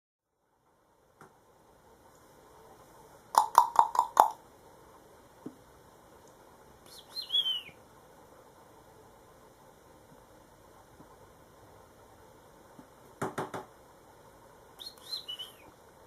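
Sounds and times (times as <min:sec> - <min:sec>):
bird tapping beak: 0:03.4 - 0:04.4
bird warbling chirp: 0:06.9 - 0:07.8, 0:14.8 - 0:15.7.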